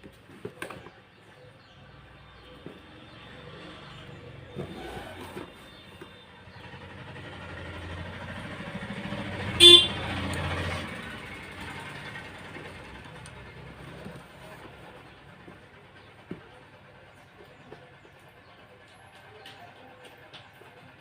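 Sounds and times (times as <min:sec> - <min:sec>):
vehicle engine rumble passing: 0:00.8 - 0:21.0
short horn toot: 0:09.6 - 0:10.0.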